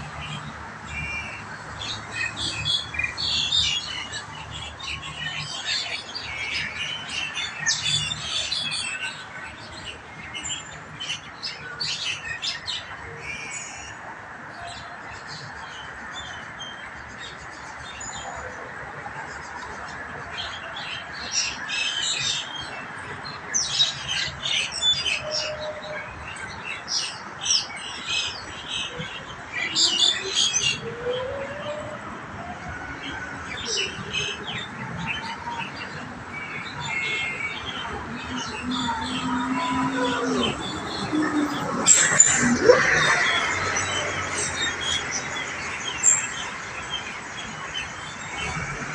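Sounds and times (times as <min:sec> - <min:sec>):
mynas chattering and squawking: 0:29.0 - 0:46.1.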